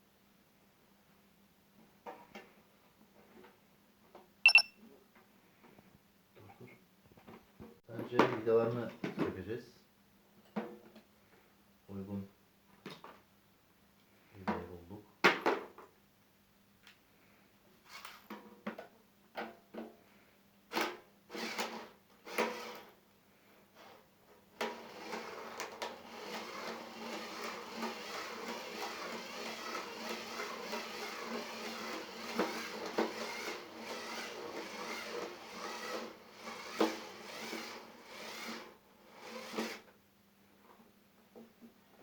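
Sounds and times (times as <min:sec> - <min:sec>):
electric screwdriver running: 0:26.1 - 0:39.8.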